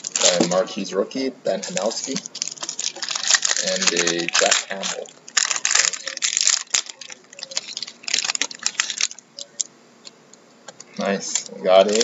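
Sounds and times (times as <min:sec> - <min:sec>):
wrapper crinkling and tearing: 0:00.0 - 0:00.8, 0:01.6 - 0:09.7, 0:11.1 - 0:12.0.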